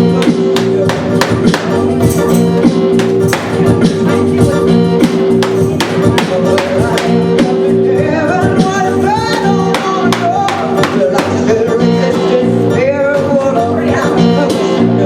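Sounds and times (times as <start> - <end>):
person singing: 0.0 - 15.0
steady percussive beat: 0.1 - 2.3, 2.9 - 7.8, 9.2 - 11.6.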